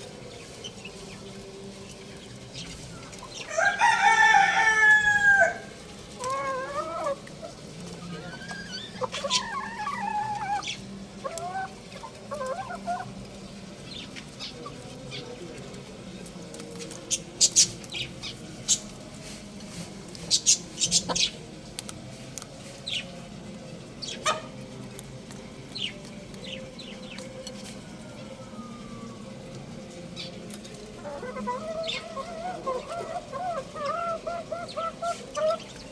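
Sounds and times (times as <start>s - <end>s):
young rooster calling: 3.5s - 7.2s.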